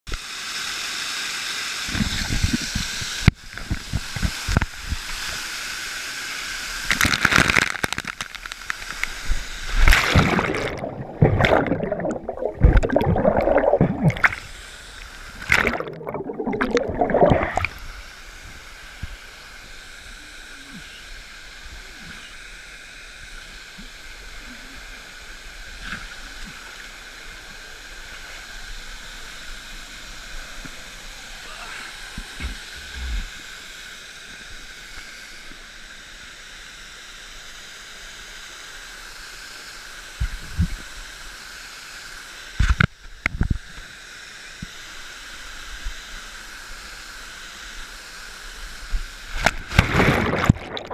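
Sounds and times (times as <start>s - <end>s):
steady rush of falling water: 0.2s - 42.7s
water splashing and sloshing: 6.9s - 17.9s, 49.3s - 50.9s.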